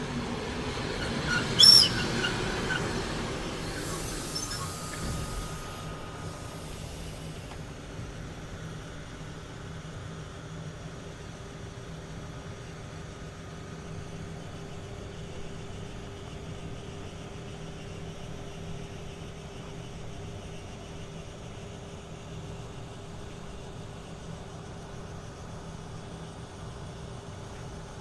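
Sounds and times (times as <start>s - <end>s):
vehicle rumble: 0.0s - 7.8s.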